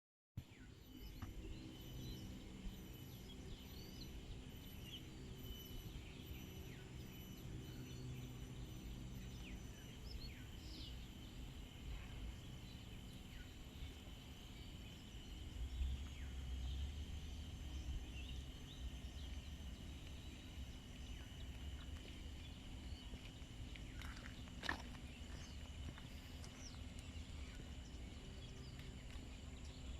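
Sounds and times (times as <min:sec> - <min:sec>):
high insect drone: 0:00.5 - 0:29.9
low rumble: 0:08.5 - 0:29.9.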